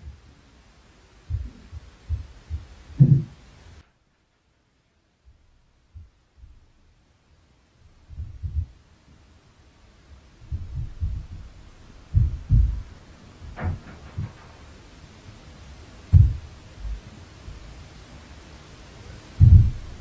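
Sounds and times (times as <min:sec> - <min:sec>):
dull thuds through ceiling: 0:01.2 - 0:03.8, 0:07.9 - 0:08.8, 0:10.4 - 0:17.8, 0:19.3 - 0:20.0.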